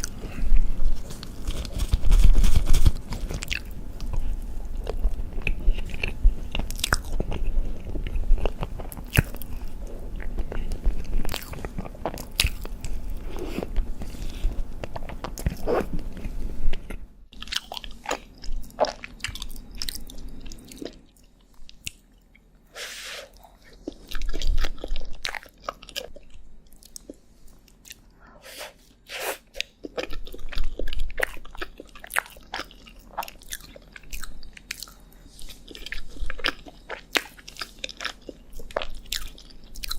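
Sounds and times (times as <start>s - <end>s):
low background hum: 0.0s - 39.9s
crisp bites and chewing: 0.9s - 16.3s.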